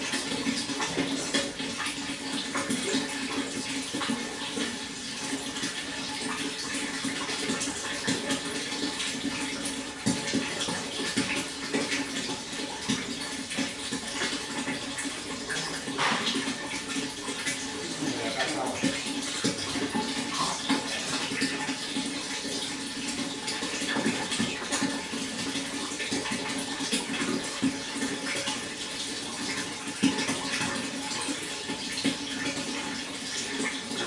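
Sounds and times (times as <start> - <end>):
water flowing and splashing: 0.0 - 34.0.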